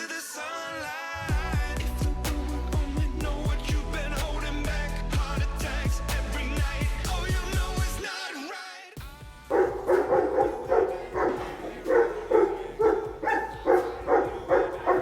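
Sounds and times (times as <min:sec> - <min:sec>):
dog barking: 0:09.5 - 0:15.0.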